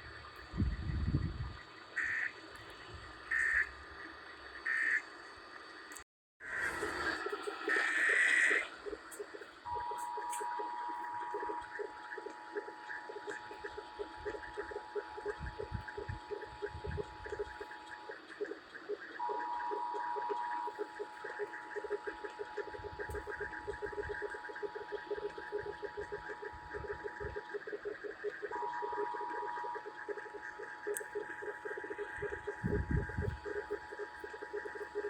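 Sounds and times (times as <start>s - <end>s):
rhythmic buzz: 0.0s - 5.0s, 6.4s - 35.0s
two-tone alert signal: 9.7s - 12.4s.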